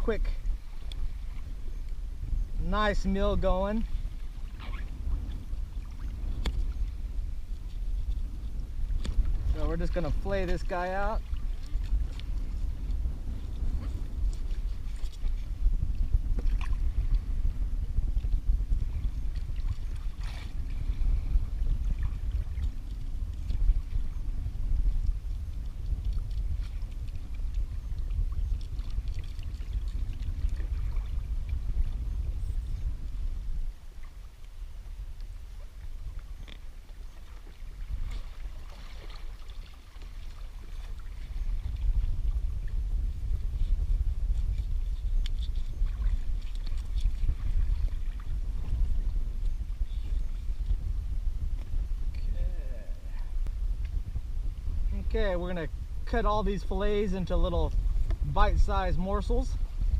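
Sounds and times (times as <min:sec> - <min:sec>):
water lapping against hull: 0:00.0 - 0:59.9
wind buffeting microphone: 0:00.0 - 0:59.9
light ticks and scrapes: 0:44.4 - 0:47.3.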